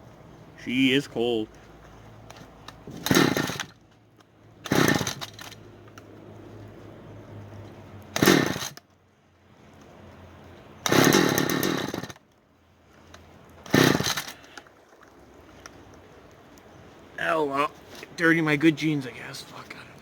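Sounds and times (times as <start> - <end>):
chainsaw pull-start bursts: 2.9 - 3.8, 4.6 - 5.6, 8.1 - 8.8, 10.8 - 12.2, 13.6 - 14.6.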